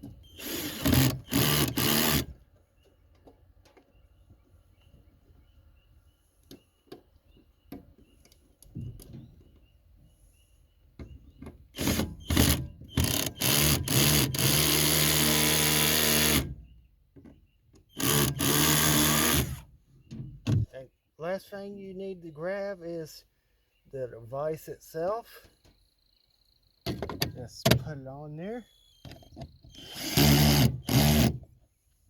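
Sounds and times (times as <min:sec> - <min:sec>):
power drill motor whirring: 0:00.3 - 0:02.3, 0:11.8 - 0:16.5, 0:17.9 - 0:19.6, 0:29.7 - 0:31.4.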